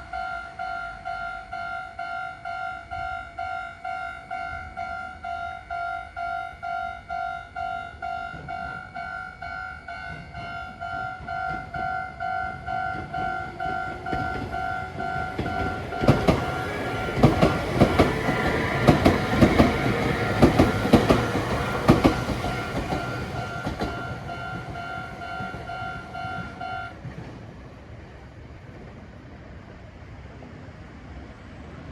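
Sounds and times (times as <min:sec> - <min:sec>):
level-crossing warning bell: 0:00.0 - 0:27.1
train wheels clacking over rail joints: 0:10.0 - 0:27.5.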